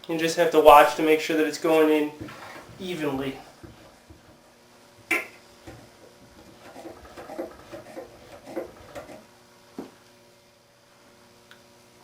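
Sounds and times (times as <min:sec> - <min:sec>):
knock on wood: 0:03.6 - 0:04.4.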